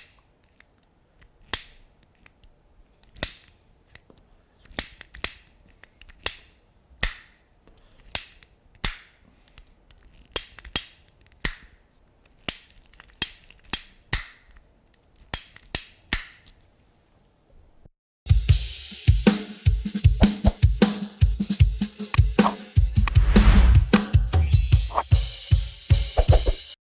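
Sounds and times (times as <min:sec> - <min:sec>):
music with drums: 0:18.3 - 0:26.8.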